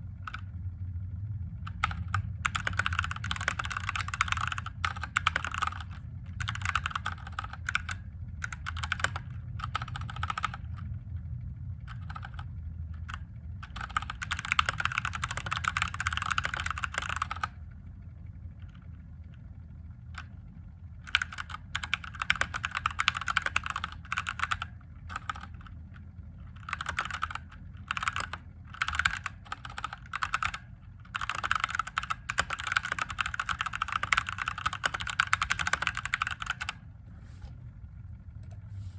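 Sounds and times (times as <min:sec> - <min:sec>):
faint low hum: 0:00.0 - 0:38.9
mechanical keyboard typing: 0:00.3 - 0:00.5, 0:01.7 - 0:10.9, 0:11.9 - 0:17.6, 0:21.1 - 0:25.8, 0:26.4 - 0:36.8.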